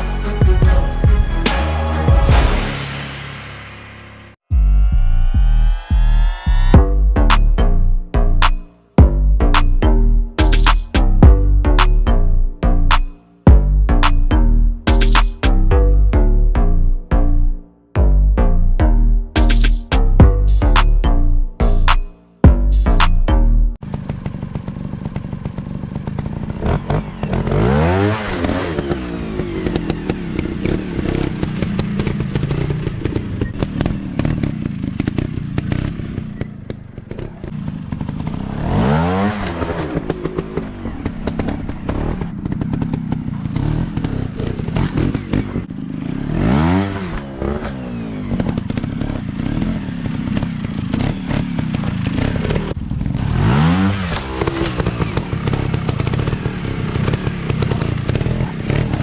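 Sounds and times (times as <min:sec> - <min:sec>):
dirt bike engines revving: 0:23.9 - 0:59.0.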